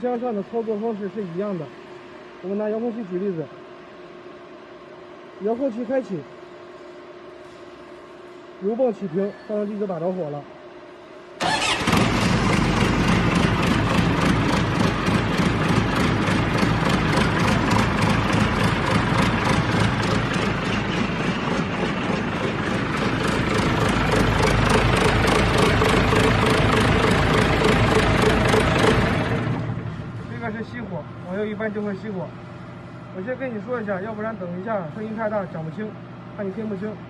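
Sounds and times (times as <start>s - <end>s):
diesel engine idling: 11.4s - 34.3s.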